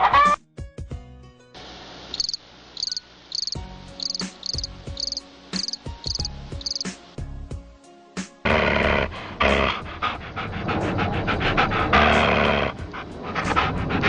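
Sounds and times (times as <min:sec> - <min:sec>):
cricket chirping: 0:02.1 - 0:07.0.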